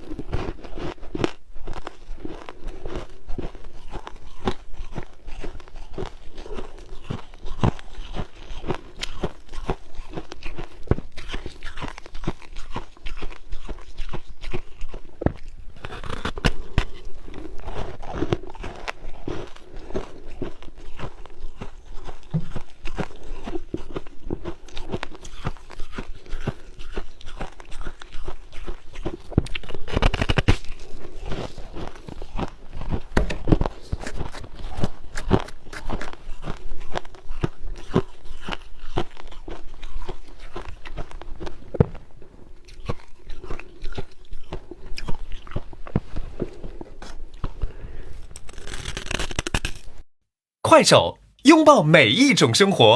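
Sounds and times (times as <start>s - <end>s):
ice being chewed: 0.0s - 49.9s.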